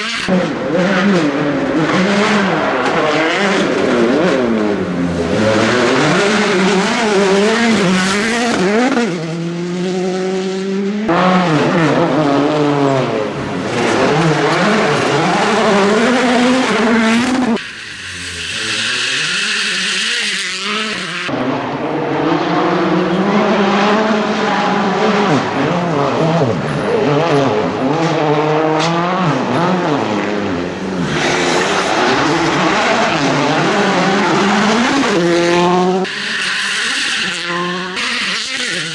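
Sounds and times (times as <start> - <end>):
rally car engines revving: 0.0 - 38.9.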